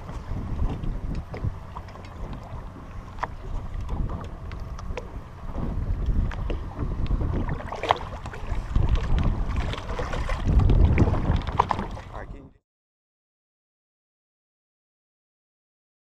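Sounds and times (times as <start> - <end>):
knocks and clatter on boat: 0.0 - 12.5
wind buffeting microphone: 0.0 - 12.6.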